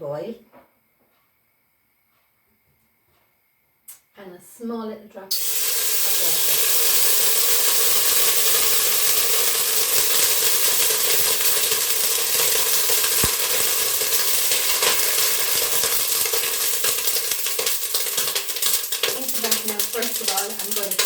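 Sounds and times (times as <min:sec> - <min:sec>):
oil sizzling in a pot: 0:05.3 - 0:21.0.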